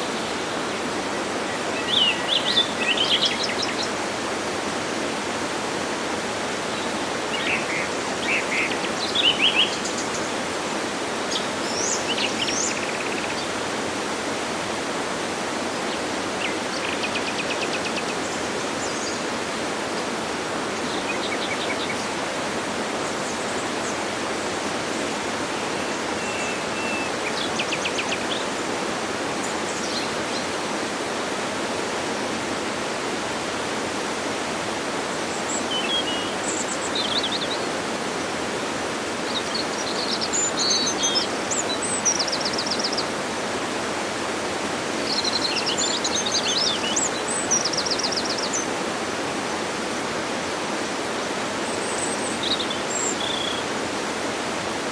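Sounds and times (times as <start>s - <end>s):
waterfall rushing: 0.0s - 54.9s
birds chirping and trilling: 51.6s - 53.8s.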